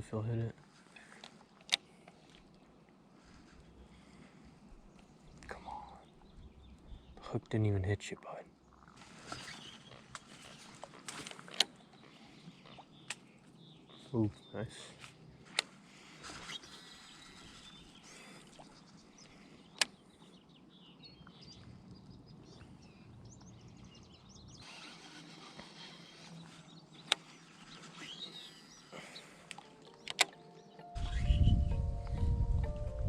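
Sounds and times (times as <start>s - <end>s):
birds chirping: 0.0s - 32.3s
sharp clicks: 19.7s - 20.0s, 29.4s - 30.9s.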